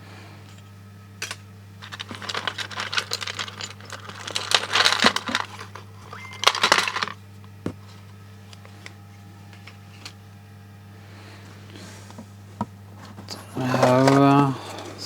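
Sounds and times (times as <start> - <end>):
hands rummaging parts: 1.2 - 10.2, 12.9 - 15.0.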